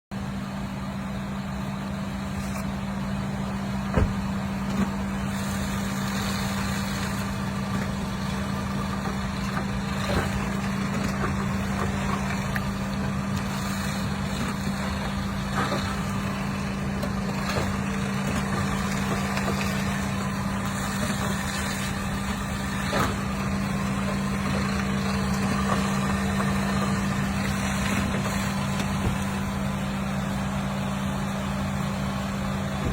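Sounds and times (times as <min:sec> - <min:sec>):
car engine humming: 0:00.0 - 0:32.9
sharp clunks: 0:03.9 - 0:04.9.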